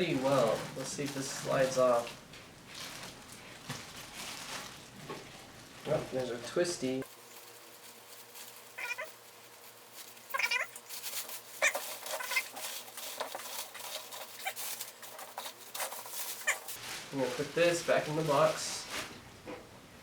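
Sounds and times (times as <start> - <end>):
plastic wrap crinkling: 0.0 - 19.3
cat meowing: 8.8 - 9.1, 10.3 - 10.8, 11.6 - 12.6.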